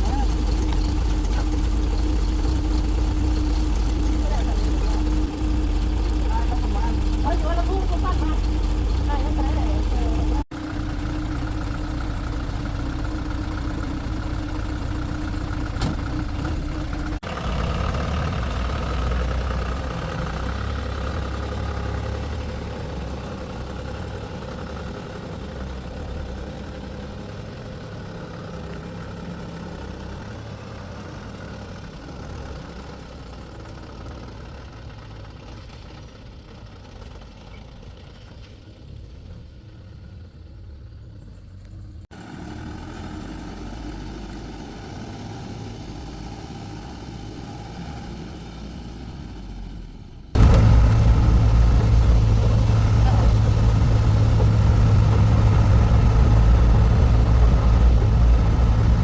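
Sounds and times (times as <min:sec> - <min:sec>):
vehicle engine running: 0:00.0 - 0:59.0.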